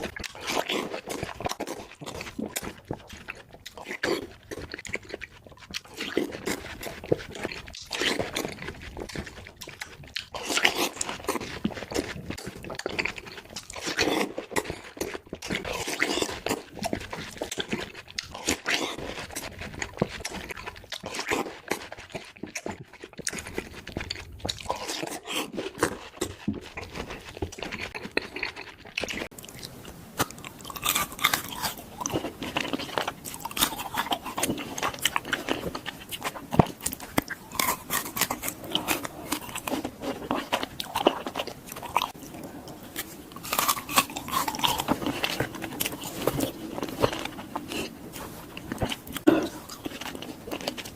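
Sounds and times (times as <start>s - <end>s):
chewing frozen fruit crunches: 0.0s - 50.9s.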